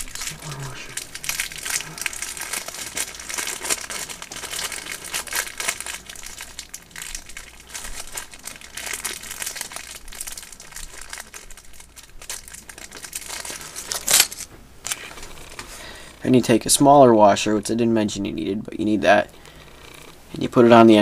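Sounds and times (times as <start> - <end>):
hands crinkling and rustling: 0.0 - 15.8.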